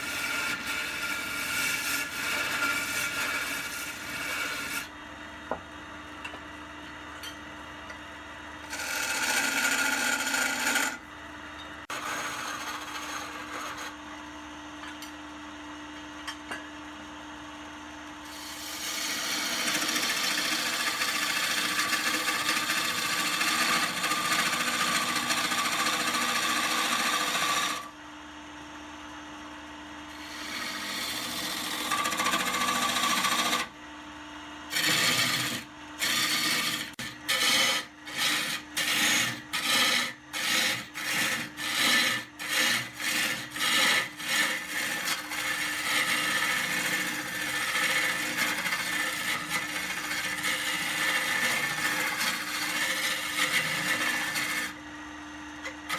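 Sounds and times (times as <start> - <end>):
tool scraping wood on lathe: 0.0 - 4.9, 8.6 - 11.0, 11.8 - 14.0, 18.3 - 28.0, 30.1 - 33.8, 34.7 - 54.8, 55.6 - 55.9.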